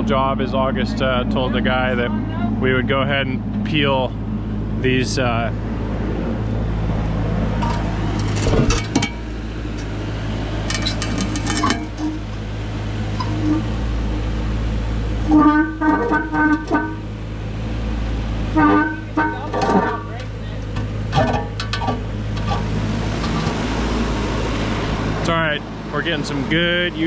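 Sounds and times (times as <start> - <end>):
diesel engine humming: 0.0 - 27.0
knocks and scrapes: 7.0 - 10.0, 10.6 - 12.4, 13.1 - 14.4, 15.2 - 17.0, 18.5 - 23.8
horn-like tones: 13.1 - 14.4, 15.2 - 17.1, 18.5 - 20.2.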